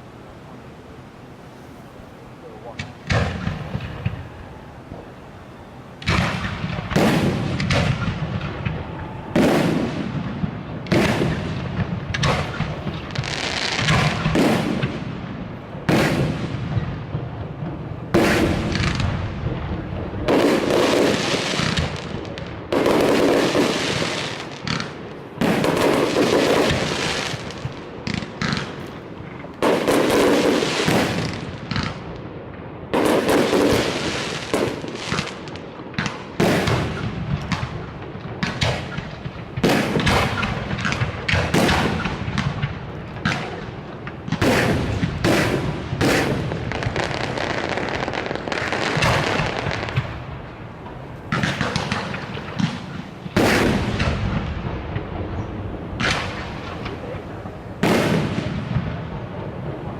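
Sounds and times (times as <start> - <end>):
low rumbling echo: 0.0 - 20.8, 34.7 - 59.9
firework crackle: 1.6 - 59.9.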